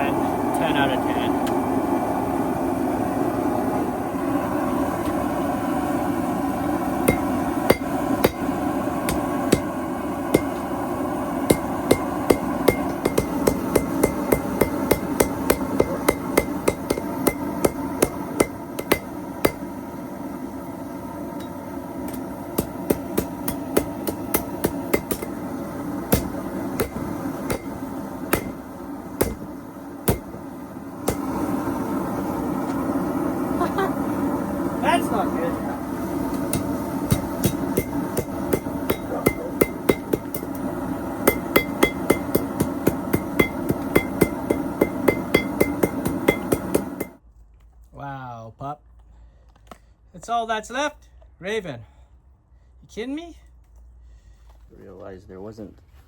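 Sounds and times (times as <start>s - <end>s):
hammer striking hot steel: 6.6s - 20.4s, 21.3s - 32.9s, 36.0s - 47.2s.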